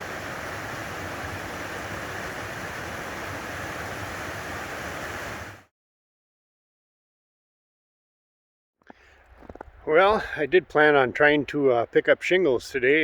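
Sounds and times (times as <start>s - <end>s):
fast-flowing creek water rushing: 0.0s - 5.6s.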